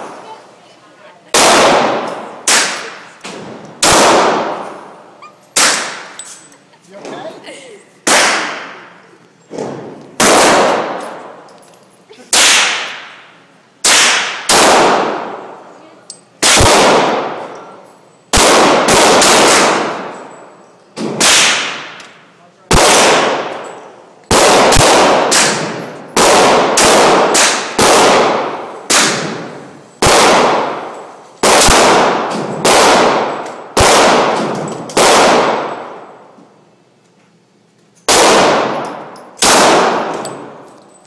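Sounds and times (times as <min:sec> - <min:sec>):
pistol shots echoing: 0:01.3 - 0:03.2, 0:03.8 - 0:05.0, 0:05.6 - 0:06.2, 0:08.0 - 0:08.9, 0:10.2 - 0:11.5, 0:12.3 - 0:15.6, 0:16.4 - 0:17.6, 0:18.3 - 0:20.4, 0:21.0 - 0:36.2, 0:38.1 - 0:40.6.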